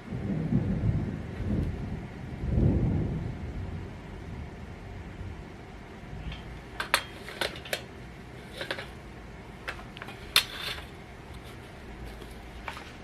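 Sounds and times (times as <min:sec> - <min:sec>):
hand tools clinking on metal: 0:06.3 - 0:09.0, 0:09.6 - 0:12.9.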